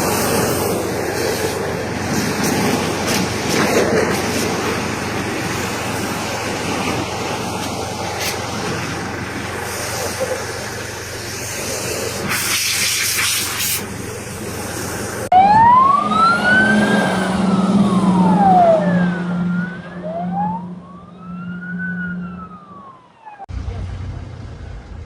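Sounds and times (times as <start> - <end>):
low engine hum: 0.0 - 25.0
outdoor vehicle noise: 0.0 - 25.0
emergency siren wailing: 2.6 - 9.6, 15.2 - 23.5.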